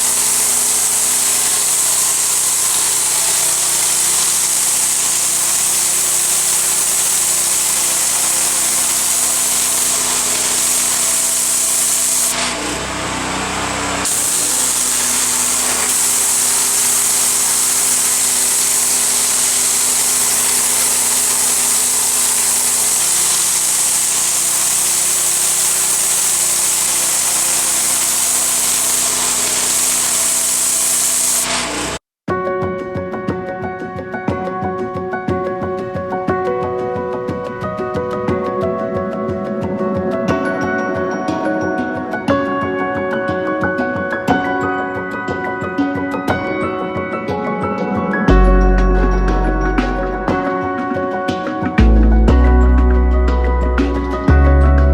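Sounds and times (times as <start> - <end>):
high-pressure spray hiss: 0.0 - 32.0
pressure washer engine running: 0.0 - 32.0, 48.3 - 50.6.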